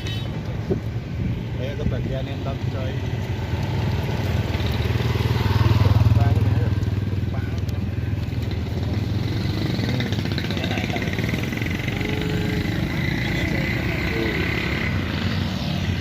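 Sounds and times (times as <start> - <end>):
motorcycle engines rumbling: 0.0 - 16.0
faint voices: 5.6 - 15.3.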